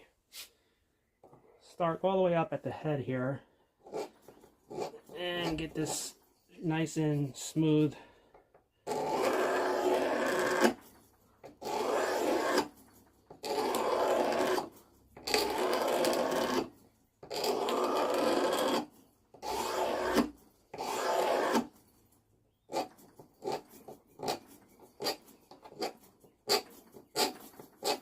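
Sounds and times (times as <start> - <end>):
knife blade scraping wood: 3.8 - 7.7, 8.9 - 21.9, 22.6 - 28.0.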